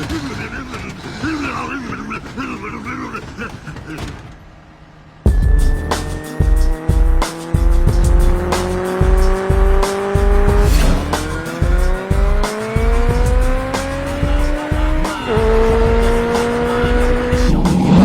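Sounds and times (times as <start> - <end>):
car engine accelerating: 4.4 - 18.0
music with heavy bass beat: 5.3 - 18.0.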